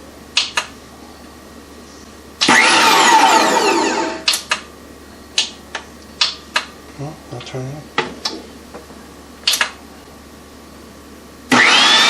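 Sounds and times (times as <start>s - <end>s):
sharp clicks: 0.4s - 0.7s, 4.3s - 4.7s, 9.4s - 9.8s
meat grinder motor whine: 2.4s - 4.3s, 11.5s - 12.0s.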